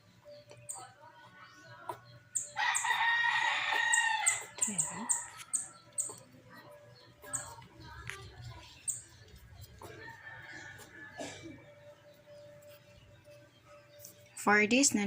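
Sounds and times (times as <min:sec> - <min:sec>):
rooster crowing: 0:02.6 - 0:05.5.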